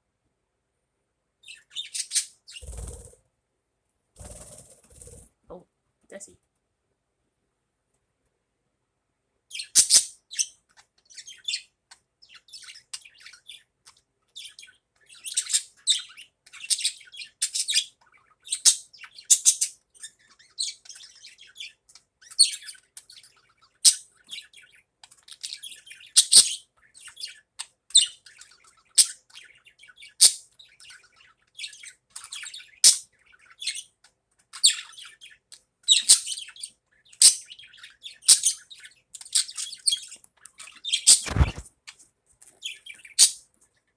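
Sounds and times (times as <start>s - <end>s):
budgerigar chattering: 40.9s - 41.6s.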